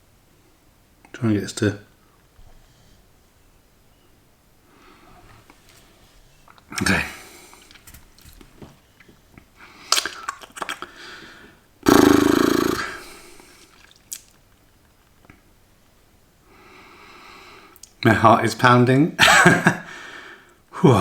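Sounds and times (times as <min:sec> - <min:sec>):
throaty noise from eater: 0:11.8 - 0:14.4.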